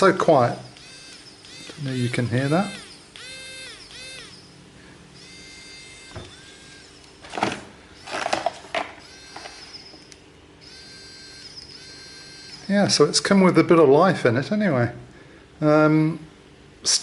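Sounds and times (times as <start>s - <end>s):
electric screwdriver motor running: 0.6s - 4.6s, 5.2s - 12.7s.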